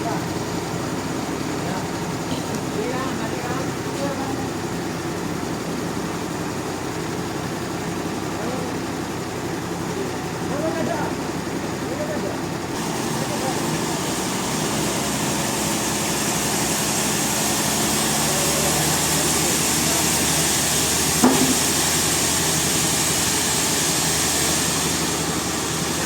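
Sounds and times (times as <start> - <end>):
band sawmill hum and hiss: 0.0 - 26.0
sharp knock: 21.2 - 21.6.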